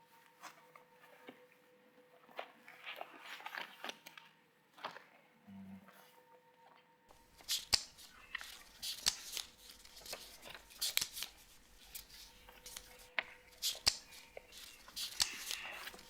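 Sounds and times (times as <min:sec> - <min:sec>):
paper rustling: 0:02.2 - 0:05.1, 0:07.1 - 0:16.0.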